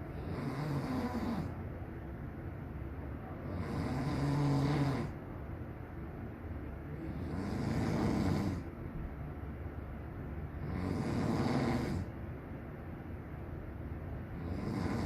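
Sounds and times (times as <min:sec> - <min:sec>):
man snoring: 0:00.1 - 0:01.6, 0:03.4 - 0:05.2, 0:07.0 - 0:08.7, 0:10.6 - 0:12.1, 0:14.3 - 0:15.0.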